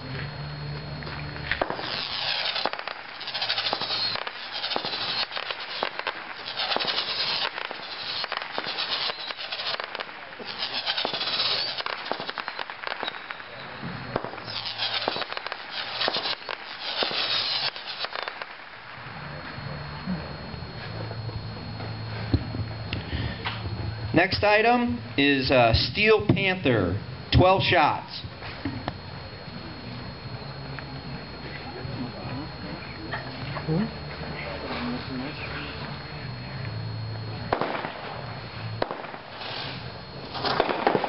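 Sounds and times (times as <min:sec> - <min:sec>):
firework shots popping: 0:01.0 - 0:19.1, 0:36.6 - 0:41.0
loud high crackling hiss: 0:01.5 - 0:19.4, 0:37.3 - 0:41.0.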